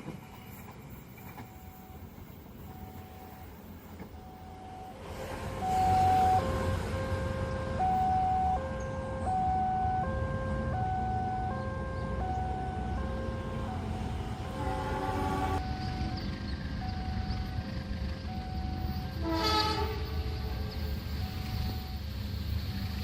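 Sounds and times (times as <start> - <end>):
level crossing alarm beeps: 4.2 - 5.0, 5.6 - 10.2, 10.8 - 14.4, 15.6 - 19.1.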